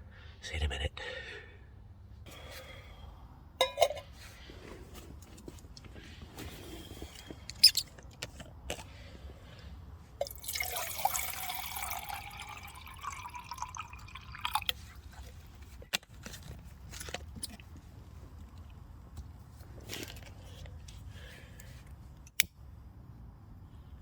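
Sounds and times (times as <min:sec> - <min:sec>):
water pouring into a pot: 0:10.2 - 0:14.9.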